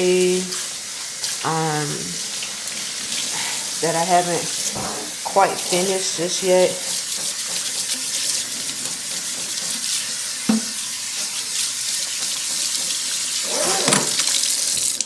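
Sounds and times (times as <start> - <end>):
dishes being washed by hand: 0.0 - 15.0
tap running into sink: 2.3 - 15.0
single knock: 10.5 - 10.7.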